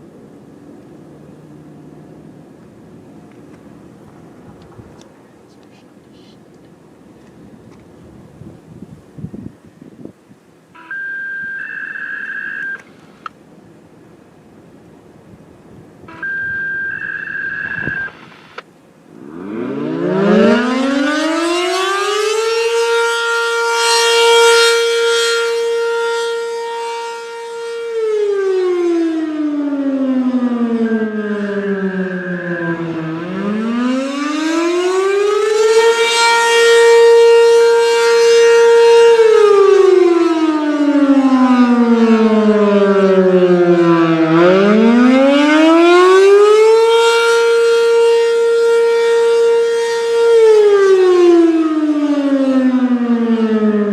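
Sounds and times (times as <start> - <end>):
warning siren wavering: 10.7 - 13.3, 16.0 - 53.9.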